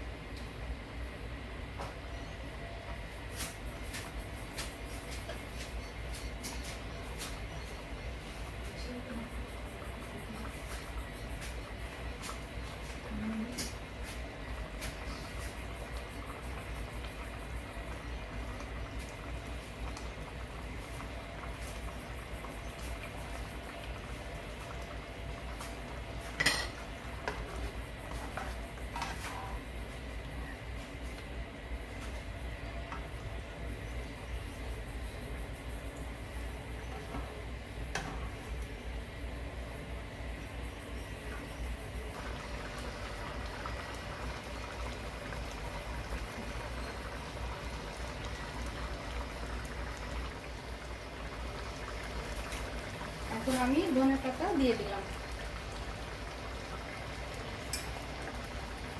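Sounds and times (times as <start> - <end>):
curry bubbling and crackling: 10.4 - 33.4, 41.4 - 58.9.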